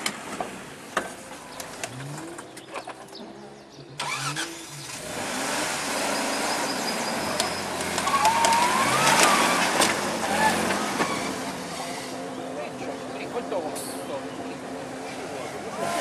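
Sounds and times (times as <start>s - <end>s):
car engine revving: 0.0s - 16.0s.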